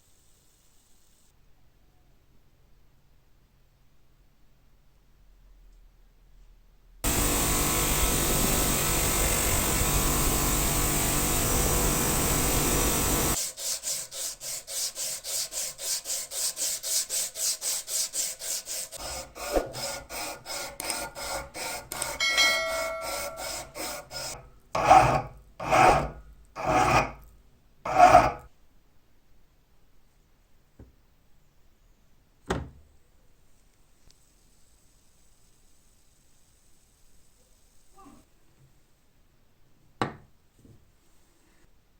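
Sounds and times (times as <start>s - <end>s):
loud steady hiss: 7.1s - 13.4s
abrasive rubbing metal shackle: 20.8s - 27.2s.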